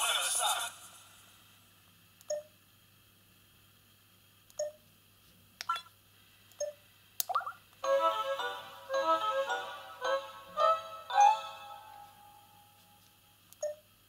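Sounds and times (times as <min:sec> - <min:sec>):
button clicks: 0:05.6 - 0:05.9.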